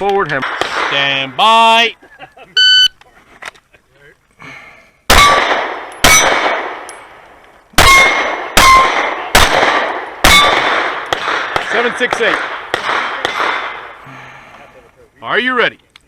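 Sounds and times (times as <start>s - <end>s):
pistol shots: 0.2s - 1.3s, 5.1s - 7.1s, 7.8s - 14.0s
faint clicks: 15.8s - 16.0s.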